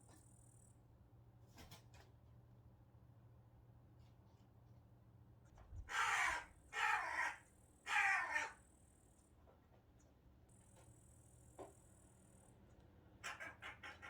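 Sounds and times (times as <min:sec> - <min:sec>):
crow cawing: 0:05.9 - 0:08.6.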